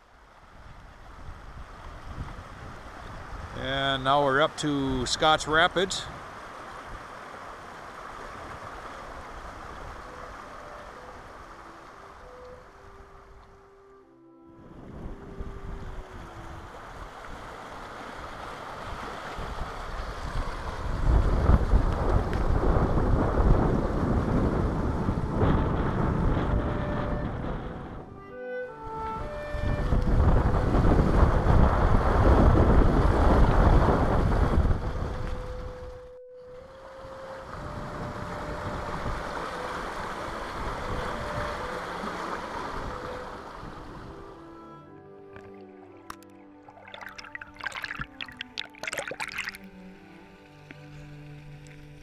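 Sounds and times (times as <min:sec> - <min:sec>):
wind buffeting microphone: 0:00.5 - 0:03.8, 0:14.6 - 0:36.0, 0:37.4 - 0:44.4
river rapids rushing: 0:03.5 - 0:13.7, 0:16.0 - 0:21.2, 0:38.4 - 0:43.7, 0:46.6 - 0:49.7.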